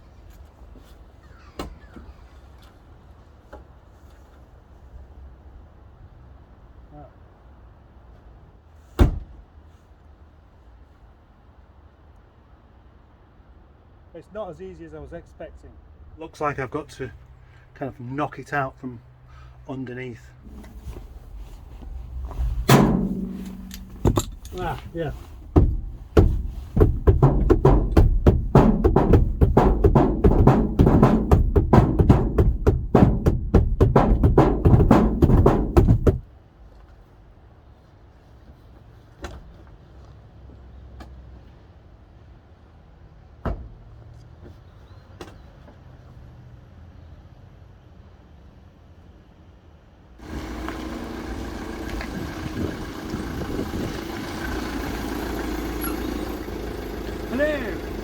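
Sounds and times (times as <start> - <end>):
vehicle engine running: 20.4 - 36.2, 50.2 - 58.0
steady bass: 20.5 - 36.2, 50.2 - 58.0
wood block strikes: 22.7 - 24.7, 25.5 - 36.2
sharp drum strikes: 22.7 - 36.2.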